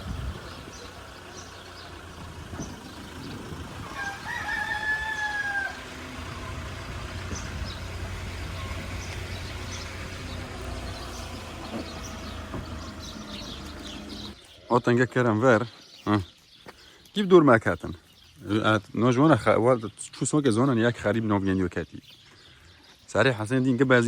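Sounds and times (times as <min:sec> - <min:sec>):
rooster crowing: 0:03.7 - 0:07.0.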